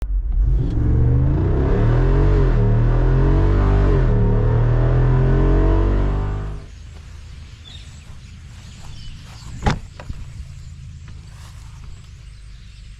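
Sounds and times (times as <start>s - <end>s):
car engine revving: 0.0s - 6.7s.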